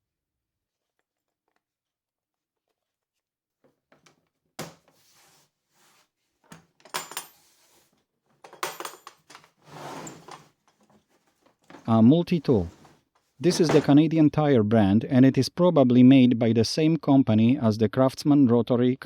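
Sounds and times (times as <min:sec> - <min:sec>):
tool accessories clinking in case: 0:06.5 - 0:14.0.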